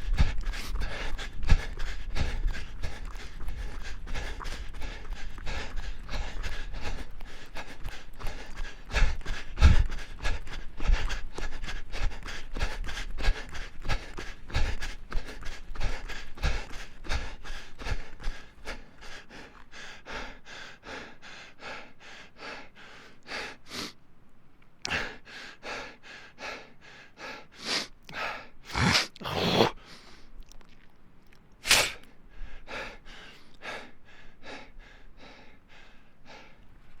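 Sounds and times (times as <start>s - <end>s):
person gasping: 0.0s - 21.9s
person panting: 0.0s - 24.0s, 24.9s - 30.3s, 31.7s - 37.0s.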